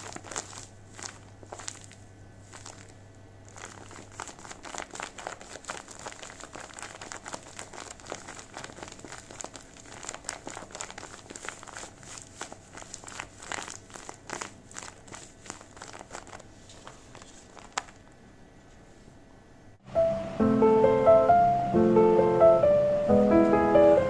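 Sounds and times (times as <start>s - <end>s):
paper crinkling: 0.0s - 18.9s.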